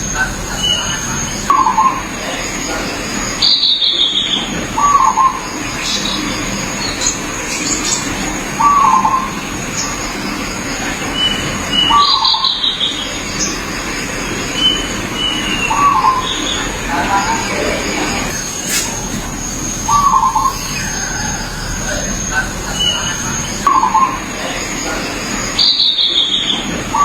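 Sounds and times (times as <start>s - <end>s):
birds chirping: 0.0s - 27.0s
dove cooing: 15.3s - 25.0s.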